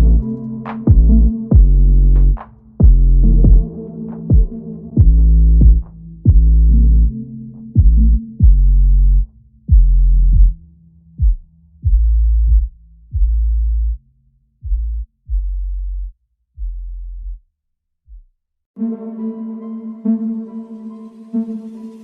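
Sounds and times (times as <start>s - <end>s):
electronic music bass notes: 0.0s - 14.0s.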